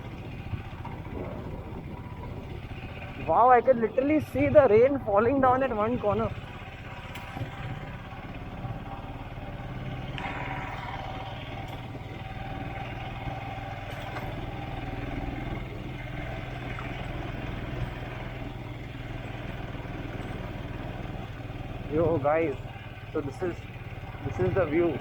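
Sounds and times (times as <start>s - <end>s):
wind noise on microphone: 0.0s - 3.6s
motorcycle engine running: 0.0s - 25.0s.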